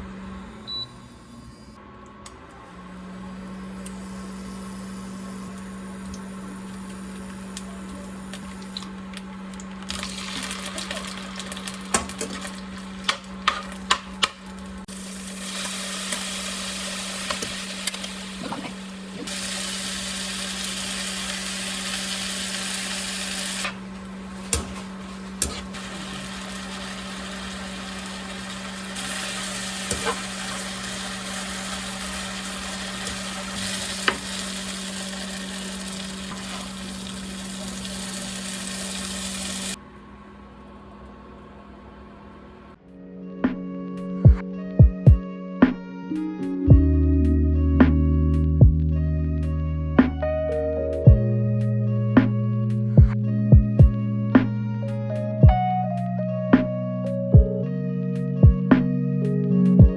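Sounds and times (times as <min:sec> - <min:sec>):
food sizzling in a pan: 0:09.9 - 0:14.2, 0:14.9 - 0:39.8.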